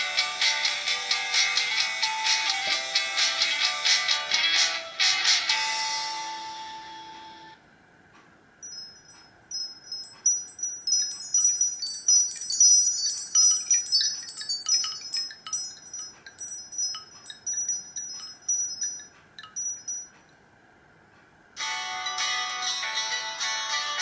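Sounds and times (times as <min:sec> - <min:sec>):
tinkling wind-chime ringtone: 0:08.6 - 0:20.1.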